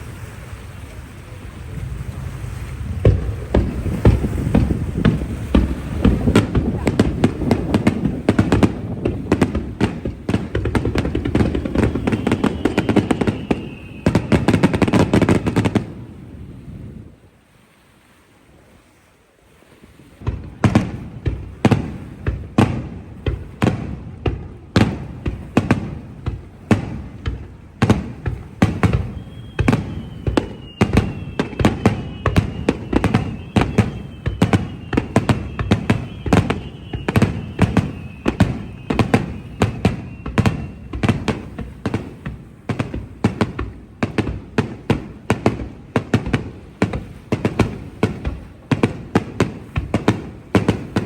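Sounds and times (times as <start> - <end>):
fireworks bursting: 0.0 - 16.4, 20.2 - 51.0
high whistle tone: 11.4 - 15.6, 28.7 - 41.4.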